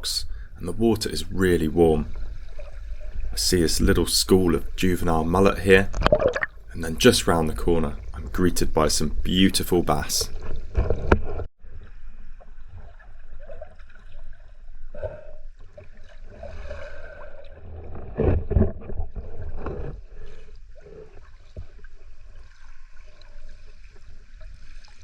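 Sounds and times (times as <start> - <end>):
low underwater thumps: 0.0 - 8.4
muffled underwater water sloshing: 0.0 - 25.0.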